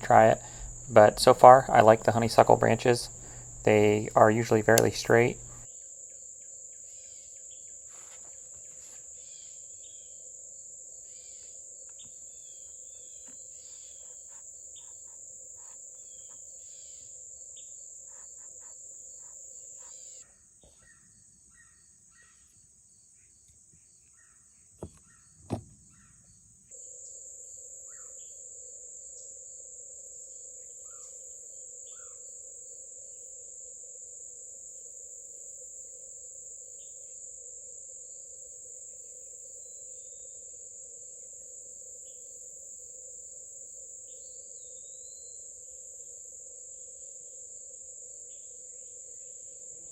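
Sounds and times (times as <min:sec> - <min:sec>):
sharp clicks: 0:00.0 - 0:05.6
high insect drone: 0:00.0 - 0:25.1, 0:25.9 - 0:49.9.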